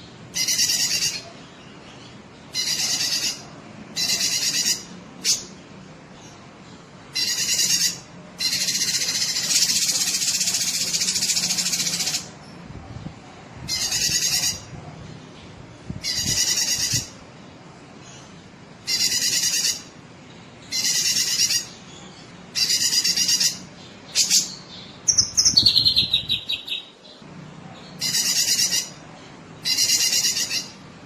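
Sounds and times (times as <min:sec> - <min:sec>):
bird singing high phrases: 0:00.3 - 0:12.3, 0:18.0 - 0:30.8.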